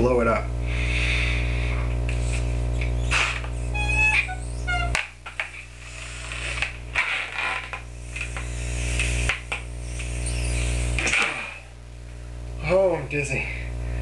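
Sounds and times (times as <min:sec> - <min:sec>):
quick breaths: 0:00.6 - 0:02.6
person blowing up balloon: 0:00.7 - 0:11.8
balloon rubber creaking: 0:02.1 - 0:11.7.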